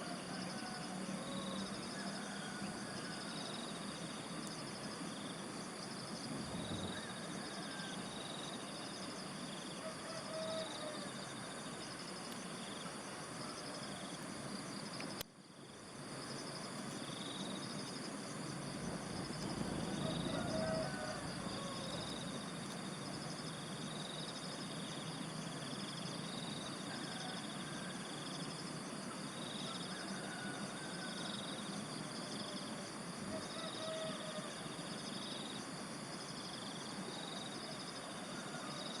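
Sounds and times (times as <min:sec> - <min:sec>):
insects chorus: 0:00.0 - 0:39.0.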